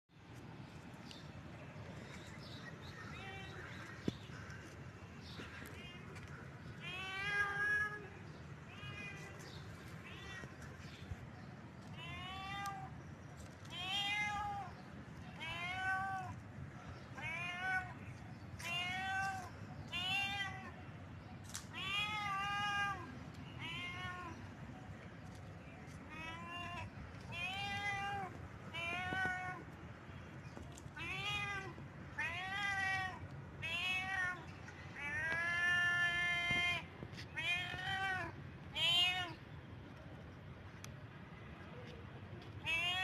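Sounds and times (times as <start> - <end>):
cat meowing: 12.0 - 12.9, 21.7 - 24.4, 26.1 - 29.6, 31.0 - 39.4.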